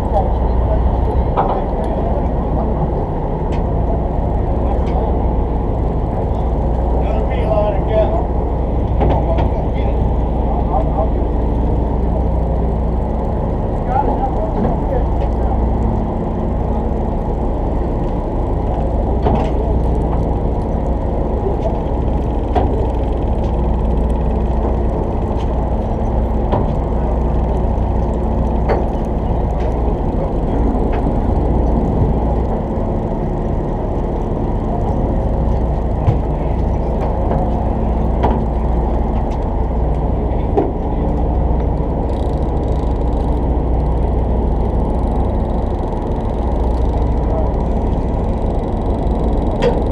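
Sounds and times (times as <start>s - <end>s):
boat engine rumbling: 0.0s - 49.9s.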